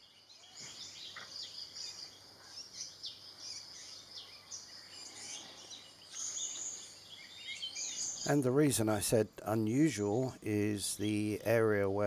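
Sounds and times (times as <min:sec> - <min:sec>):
birds chirping: 0:00.0 - 0:09.0.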